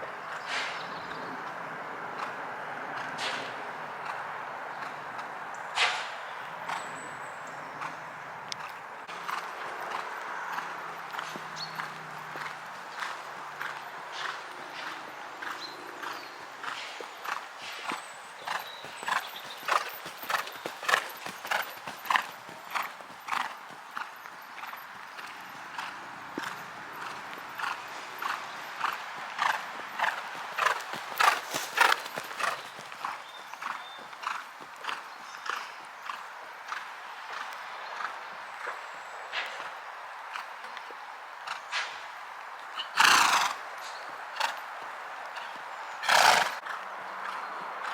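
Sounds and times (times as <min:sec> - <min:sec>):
horse hoofbeats: 0:07.6 - 0:37.6.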